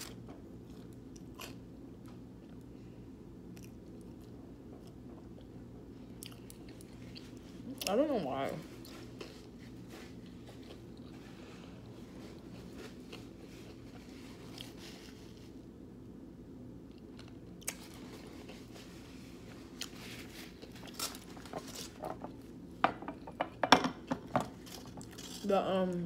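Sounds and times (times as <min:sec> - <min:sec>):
person chewing food: 0:00.0 - 0:02.7, 0:03.4 - 0:07.9, 0:08.8 - 0:15.5, 0:16.9 - 0:18.8, 0:19.4 - 0:22.6, 0:24.6 - 0:25.4.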